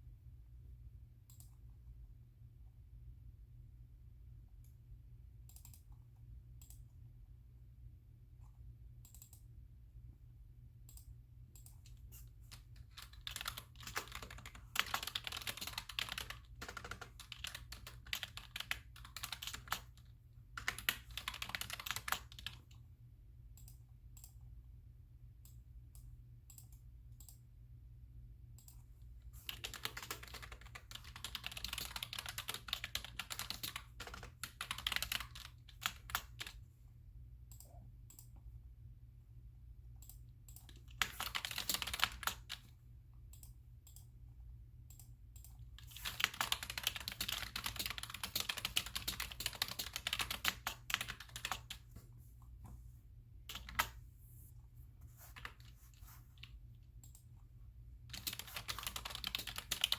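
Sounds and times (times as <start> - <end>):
typing on computer keyboard: 5.5 - 6.0, 10.9 - 22.8, 28.6 - 36.6, 40.0 - 44.1, 44.9 - 52.0, 53.5 - 54.0, 58.0 - 59.9.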